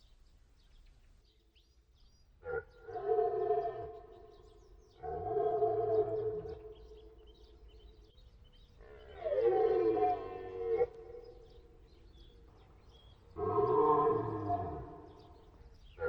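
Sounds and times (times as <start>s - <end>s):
deer stag roaring: 8.8s - 11.2s, 13.4s - 15.2s.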